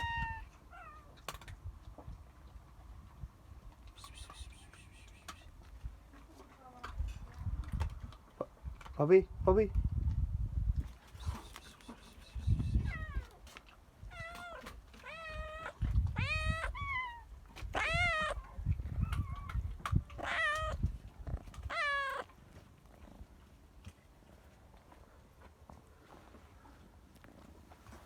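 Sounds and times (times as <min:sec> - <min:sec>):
young animal calling: 0:11.1 - 0:13.4, 0:14.1 - 0:20.9, 0:21.5 - 0:22.3.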